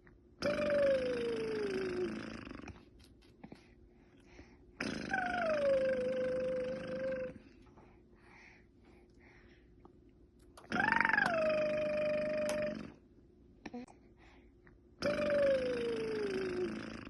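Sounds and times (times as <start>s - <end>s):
woman making raspy throat noise: 0.4s - 2.8s, 4.8s - 7.5s, 10.6s - 13.0s, 15.0s - 17.0s.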